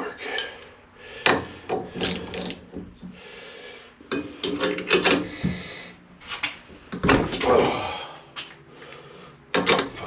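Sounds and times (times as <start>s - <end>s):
ratchet clicks and scrapes: 1.9s - 2.6s.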